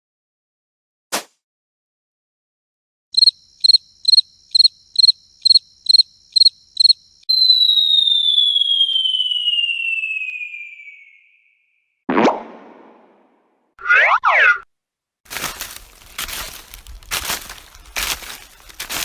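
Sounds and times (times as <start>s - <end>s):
descending whistle: 7.3s - 11.9s.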